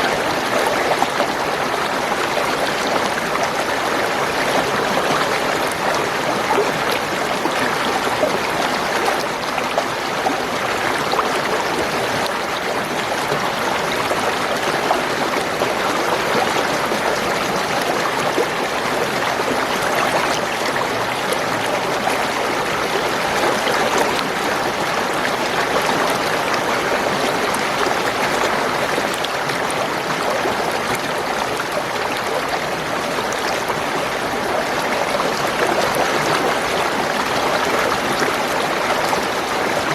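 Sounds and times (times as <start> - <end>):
spring water gurgling: 0.0 - 39.9.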